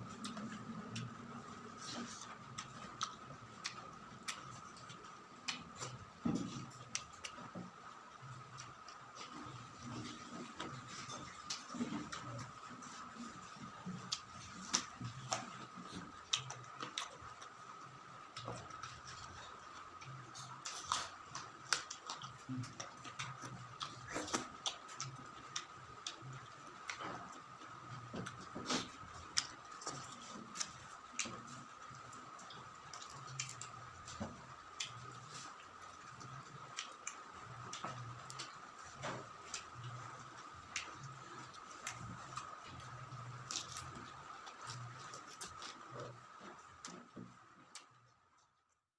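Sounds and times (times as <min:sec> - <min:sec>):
faint steady high hum: 0:00.0 - 0:48.6
chewing with wet mouth clicks: 0:00.1 - 0:48.5.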